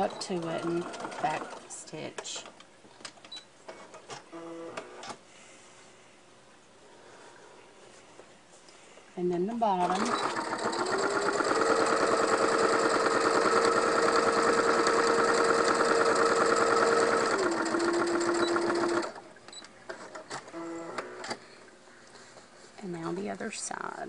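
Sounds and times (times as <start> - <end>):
sewing machine stitching: 0.0 - 1.7, 9.8 - 19.2.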